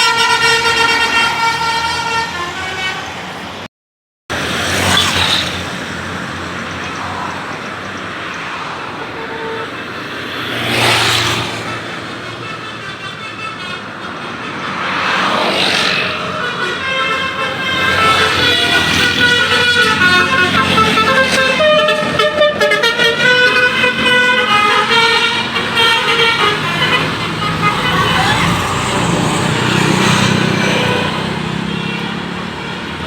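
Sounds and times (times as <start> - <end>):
multi-tone bus horn chord: 0.0 - 3.2, 11.4 - 15.5, 16.1 - 33.0
vehicles passing by: 0.0 - 3.7, 4.3 - 33.0.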